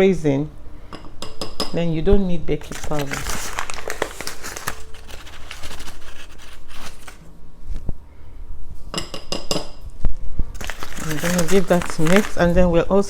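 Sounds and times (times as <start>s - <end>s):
utensils scraping in a bowl: 10.6s - 12.5s.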